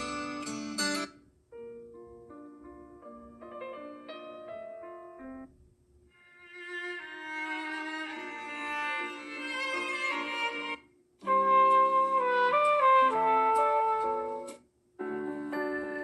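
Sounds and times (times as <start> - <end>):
ringtone of held notes: 15.0 - 16.0.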